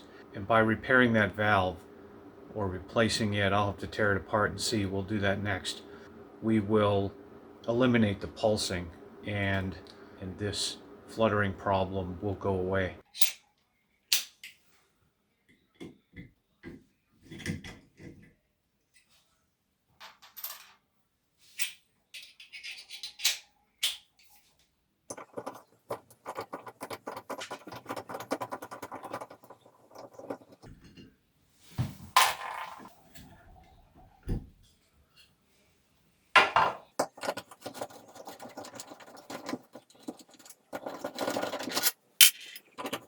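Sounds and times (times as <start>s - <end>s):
metal parts rattling: 40.2s - 43.0s
tools and metal parts clicking: 40.5s - 43.0s.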